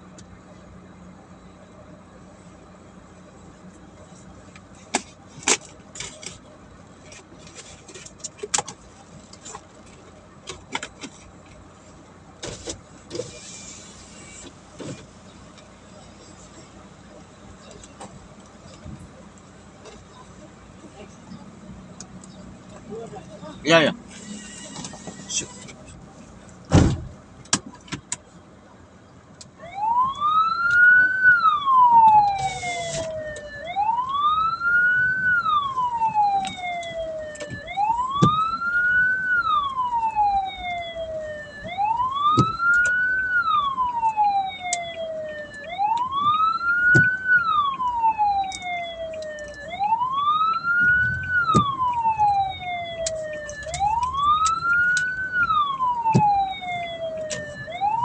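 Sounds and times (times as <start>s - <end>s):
wailing siren: 29.6s - 58.0s.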